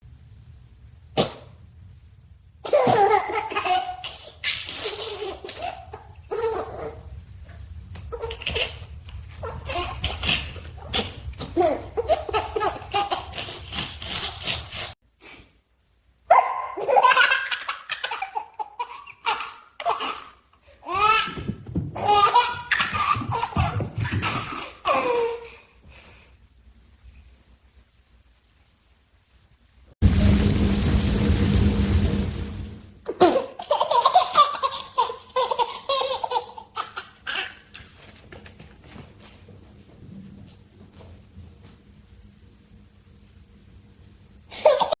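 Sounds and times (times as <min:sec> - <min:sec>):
baby laughing: 0:02.7 - 0:07.1, 0:08.1 - 0:14.9, 0:16.3 - 0:25.7, 0:33.1 - 0:38.2.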